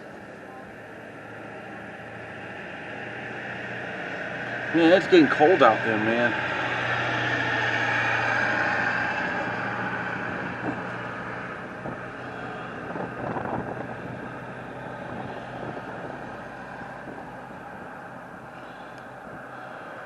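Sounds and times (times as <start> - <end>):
vehicle engine hum and road noise: 0.0 - 20.0
wind on microphone: 6.4 - 20.0.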